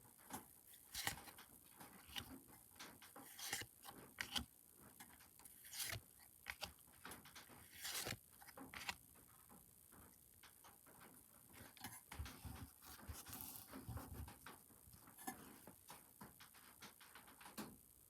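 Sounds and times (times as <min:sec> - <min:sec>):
cards rustling: 0:00.7 - 0:01.3, 0:03.2 - 0:04.4, 0:05.4 - 0:06.7, 0:07.6 - 0:09.0, 0:12.2 - 0:14.2.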